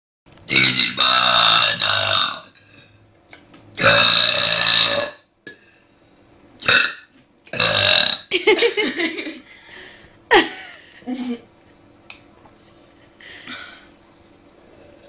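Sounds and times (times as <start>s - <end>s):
girl burping loudly: 7.6s - 8.3s.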